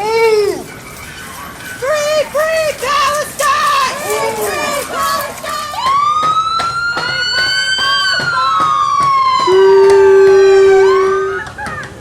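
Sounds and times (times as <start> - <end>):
siren wailing: 4.0 - 11.5
low horn tone: 9.5 - 11.3.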